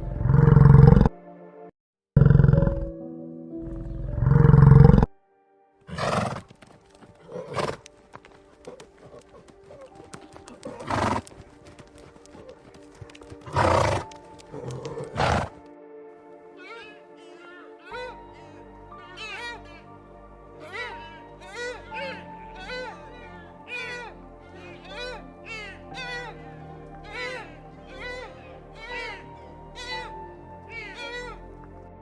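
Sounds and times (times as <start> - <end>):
background music: 0.0 - 1.7, 2.4 - 32.0
animal roaring: 0.2 - 1.1, 2.2 - 2.8, 3.6 - 5.1, 13.5 - 15.6
animal calls: 16.6 - 31.7.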